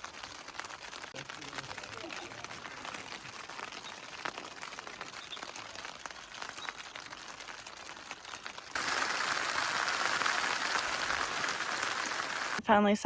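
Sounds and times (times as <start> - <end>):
rain drops ticking: 0.0 - 12.6
steady rushing hiss: 8.6 - 12.6.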